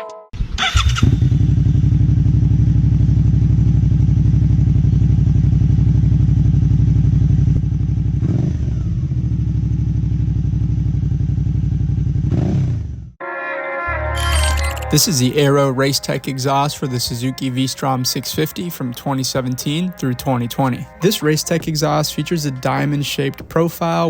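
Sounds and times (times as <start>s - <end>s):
motorcycle engine idling: 0.7s - 13.1s.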